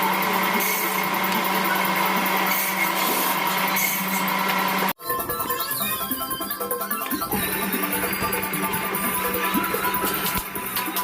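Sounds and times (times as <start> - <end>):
power tool cutting wood: 0.0 - 5.0.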